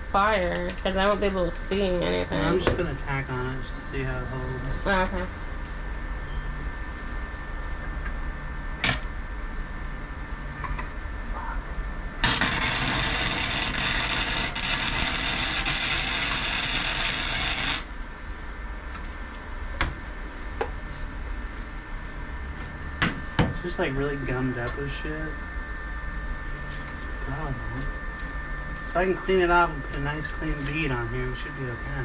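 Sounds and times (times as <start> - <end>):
arc welder crackling hiss: 8.8 - 9.1, 12.2 - 18.1.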